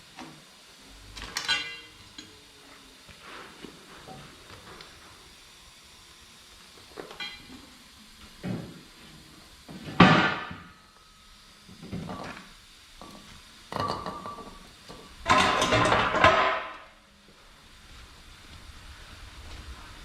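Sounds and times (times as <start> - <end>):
metal clanks and knocks: 15.3 - 16.7.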